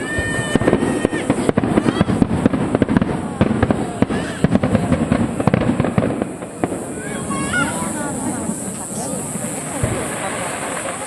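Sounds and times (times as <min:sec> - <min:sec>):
faint firework whistles: 0:00.0 - 0:11.0
firework shell bursts and crackle: 0:00.0 - 0:11.0.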